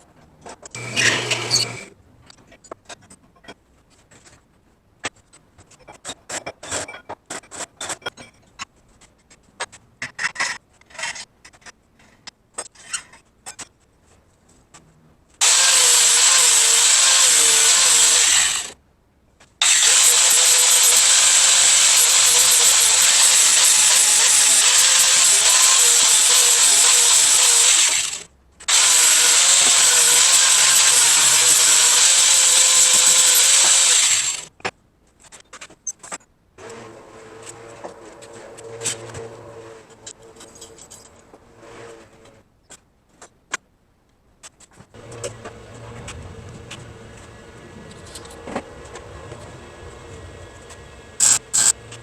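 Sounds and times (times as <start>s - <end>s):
steel parts clanking: 37.4s - 41.4s
metalworking tool hissing: 49.0s - 52.0s.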